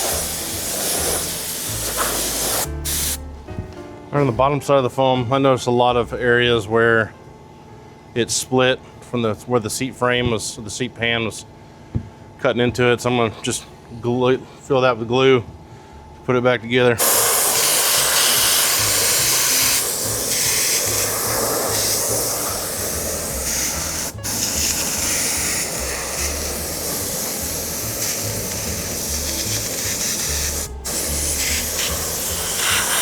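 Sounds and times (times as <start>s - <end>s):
spray adhesive hissing: 0.0s - 3.2s, 17.0s - 33.0s.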